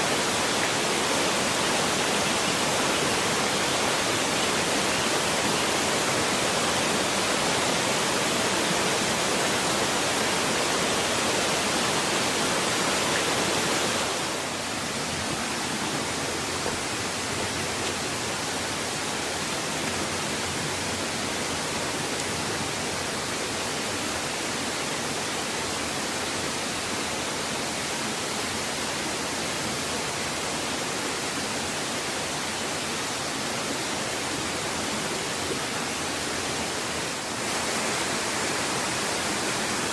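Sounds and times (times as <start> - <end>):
mountain stream rushing: 0.0 - 39.9.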